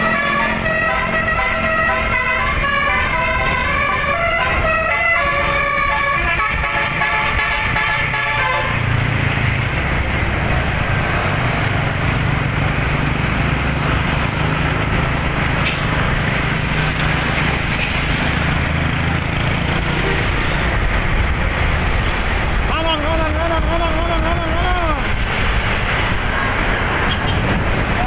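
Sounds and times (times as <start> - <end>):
multi-tone bus horn tune: 0.0 - 9.4
road and wind noise: 0.0 - 28.0.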